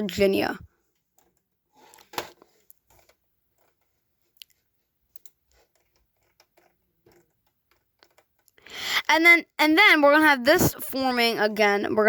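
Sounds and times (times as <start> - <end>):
faint small clicks and taps: 2.6 - 8.6.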